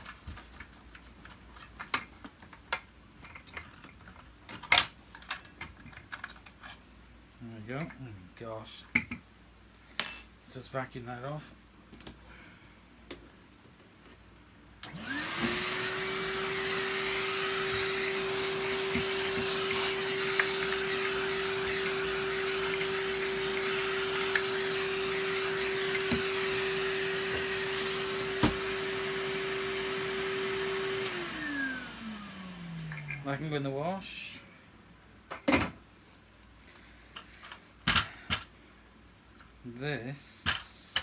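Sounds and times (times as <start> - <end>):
vacuum cleaner motor whine: 14.8 - 33.5.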